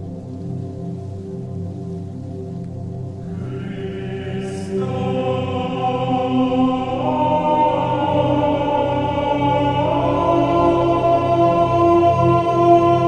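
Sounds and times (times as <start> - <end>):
steady low drone: 0.0 - 13.0
choral voices holding long notes: 2.8 - 13.0.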